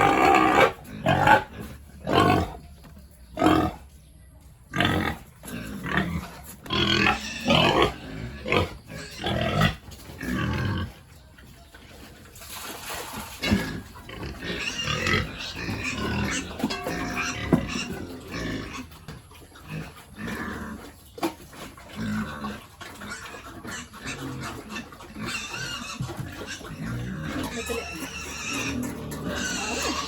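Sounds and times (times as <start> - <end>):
pigs grunting and squealing: 0.0 - 4.0, 4.7 - 11.6, 12.4 - 30.0.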